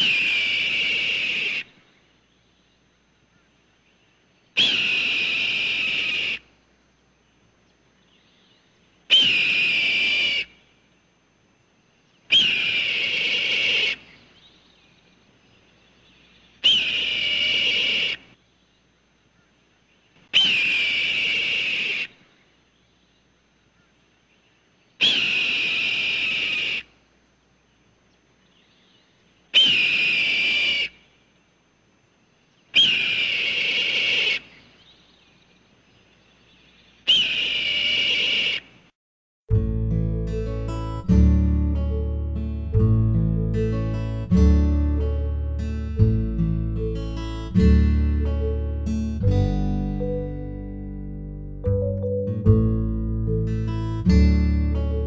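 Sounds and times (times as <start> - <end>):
hawk screeching: 0.0 - 1.7, 4.6 - 6.4, 9.1 - 10.6, 12.3 - 14.1, 16.6 - 18.3, 20.4 - 22.2, 25.0 - 26.9, 29.6 - 31.0, 32.8 - 34.6, 37.1 - 38.7.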